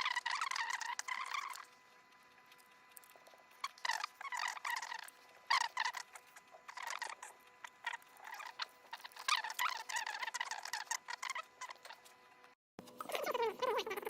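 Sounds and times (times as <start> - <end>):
faint steady whine: 0.0 - 13.2.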